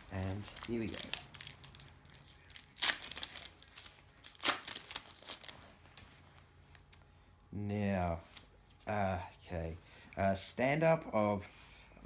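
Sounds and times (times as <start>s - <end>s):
packet wrapper ripping: 0.0s - 6.0s
wrapper crinkling: 0.0s - 7.0s.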